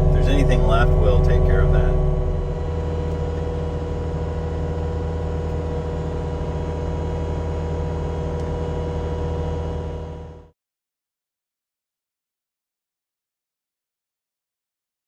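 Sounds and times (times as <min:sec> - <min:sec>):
diesel engine droning: 0:00.0 - 0:10.5.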